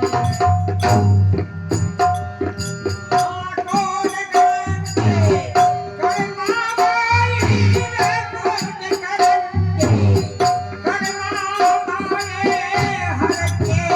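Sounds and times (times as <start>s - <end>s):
rattling hand percussion: 0.0s - 13.9s.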